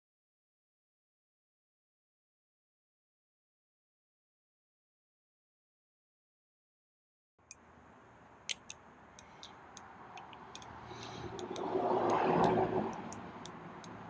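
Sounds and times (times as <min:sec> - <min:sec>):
butterfly knife clicking: 0:08.4 - 0:14.0
rushing noise: 0:09.4 - 0:14.0.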